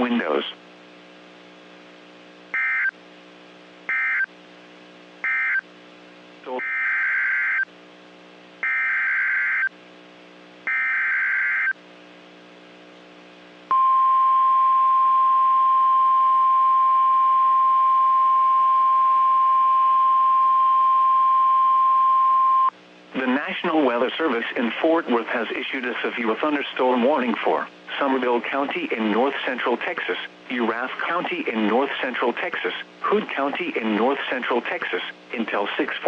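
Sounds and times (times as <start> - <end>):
steady warning alarm tone: 2.6 - 2.9, 3.9 - 4.3, 5.2 - 5.6, 6.5 - 7.6, 8.6 - 9.7, 10.7 - 11.8.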